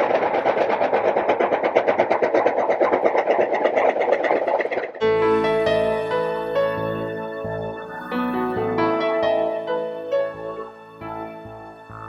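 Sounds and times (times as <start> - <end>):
fast mechanical clatter: 0.0 - 5.1
piano music: 5.0 - 12.0.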